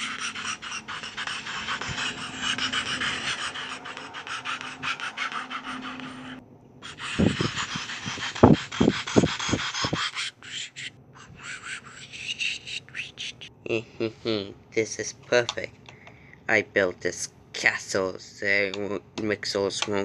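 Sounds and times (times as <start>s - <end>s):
helicopter rotor chopping: 0.0s - 10.1s.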